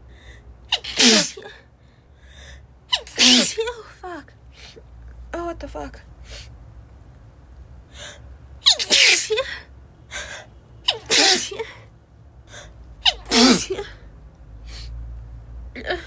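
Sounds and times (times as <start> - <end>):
woman sneezing: 0.7 - 1.6, 2.9 - 3.8, 8.6 - 9.6, 10.9 - 11.8, 13.0 - 14.0.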